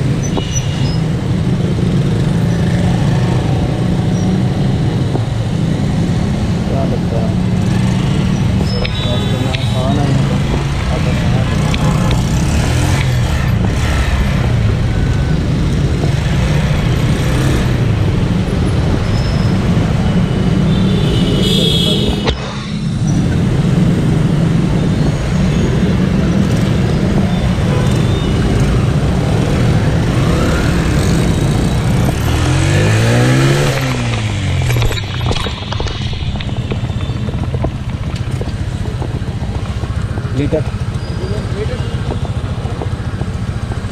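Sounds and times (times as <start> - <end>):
road and wind noise: 0.0 - 43.9
motorcycle engine running: 26.2 - 43.9.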